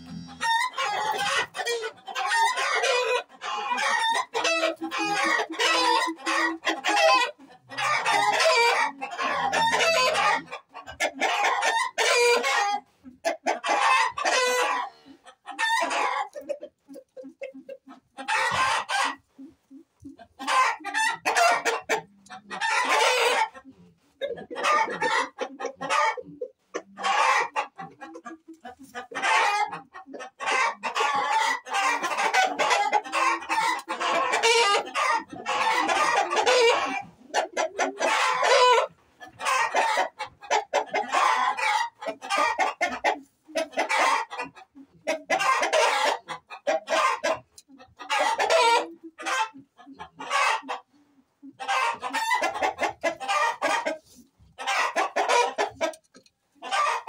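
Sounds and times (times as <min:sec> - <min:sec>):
roosters crowing: 0:00.0 - 0:10.5, 0:11.1 - 0:12.8, 0:13.6 - 0:16.4, 0:30.7 - 0:40.2
chickens clucking: 0:00.0 - 0:57.0.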